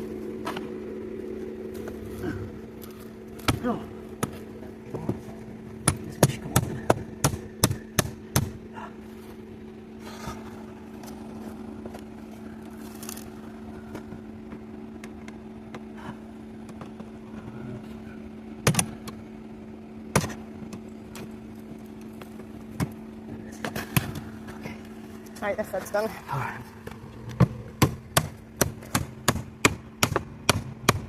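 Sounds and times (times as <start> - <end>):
steady low hum: 0.0 - 31.0
sharp knocks: 27.4 - 31.0.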